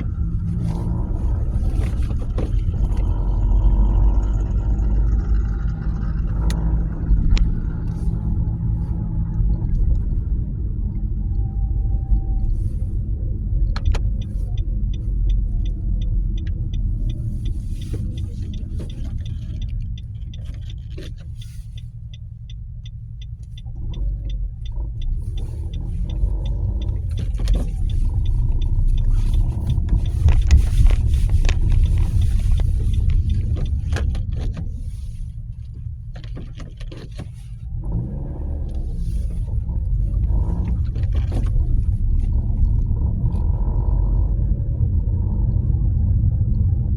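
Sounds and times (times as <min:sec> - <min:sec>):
car engine rumbling: 0:00.0 - 0:46.9
light even ticking: 0:13.2 - 0:34.8.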